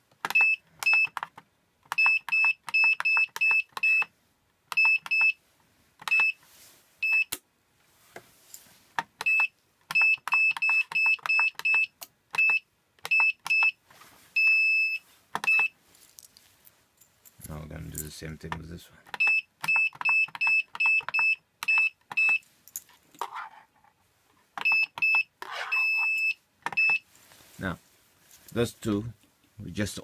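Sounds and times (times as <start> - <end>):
keypad beeps with clicks: 0.2 - 1.3, 1.9 - 4.1, 4.7 - 5.4, 6.0 - 6.4, 7.0 - 7.4, 9.2 - 13.8, 14.4 - 15.7, 19.1 - 22.4, 24.6 - 27.0.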